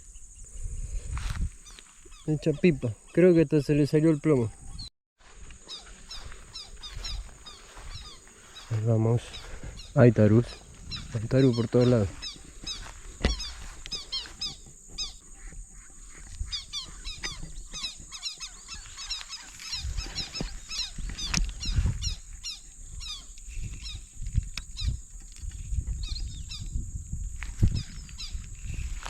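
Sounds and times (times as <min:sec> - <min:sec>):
birds chirping: 0:00.0 - 0:29.0
low rumbles: 0:06.3 - 0:15.2.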